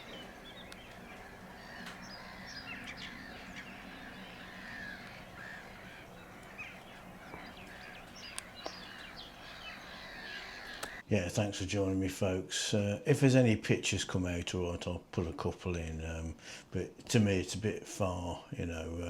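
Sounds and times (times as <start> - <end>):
distant birds chirping and squawking: 0.0 - 11.1
sharp clicks: 10.7 - 11.0.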